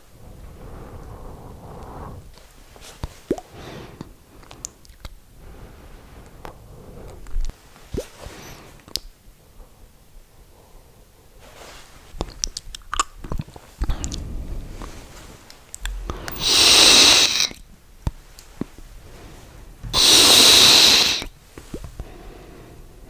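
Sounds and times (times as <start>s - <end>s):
mouth and lip clicks: 15.8s - 17.6s, 19.8s - 22.0s
vapour blown out breathily: 15.9s - 17.6s, 19.0s - 22.1s.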